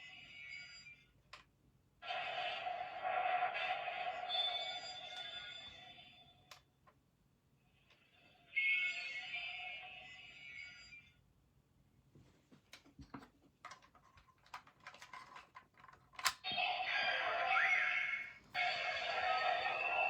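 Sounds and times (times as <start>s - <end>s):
toy electronic sound effects: 2.0s - 6.4s, 16.4s - 20.0s.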